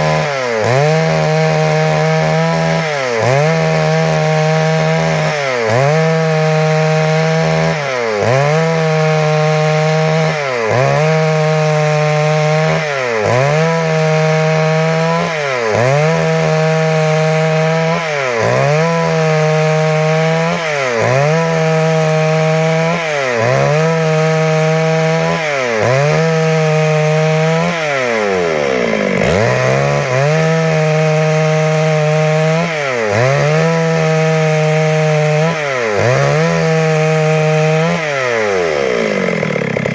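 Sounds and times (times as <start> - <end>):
chainsaw sawing through wood: 0.0 - 39.9.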